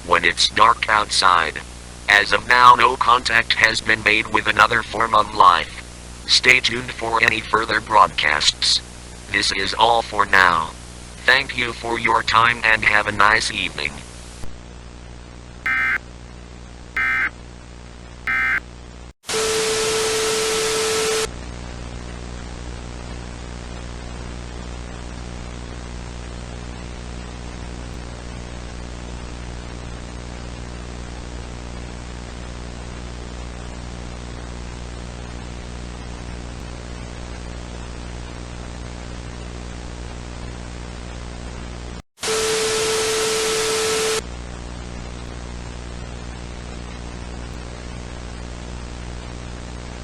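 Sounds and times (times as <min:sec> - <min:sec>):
electrical hum: 0:15.7 - 0:16.0, 0:17.0 - 0:17.3, 0:18.3 - 0:18.6
steady tone in static: 0:15.7 - 0:16.0, 0:17.0 - 0:17.3, 0:18.3 - 0:18.6.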